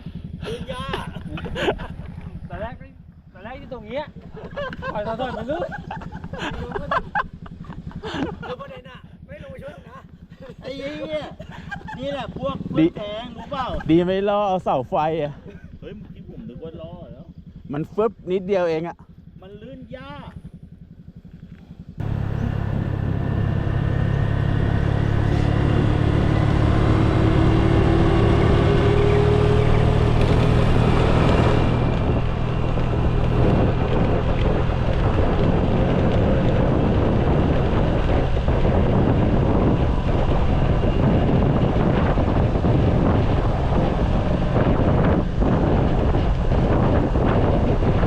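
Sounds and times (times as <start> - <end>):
engine running: 0.0 - 48.0
wind noise on microphone: 21.8 - 48.0.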